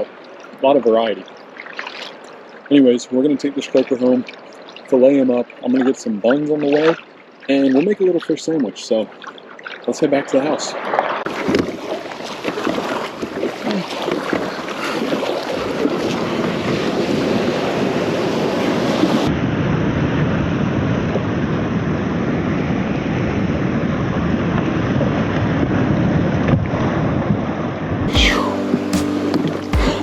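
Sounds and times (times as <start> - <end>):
water rushing past boat: 0.0 - 30.0.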